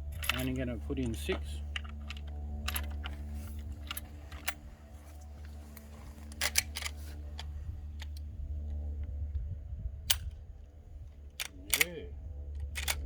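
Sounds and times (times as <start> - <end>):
metallic clicks of rifle loading: 0.0 - 4.7, 5.4 - 8.3, 11.2 - 13.0
steady low hum: 0.0 - 13.0.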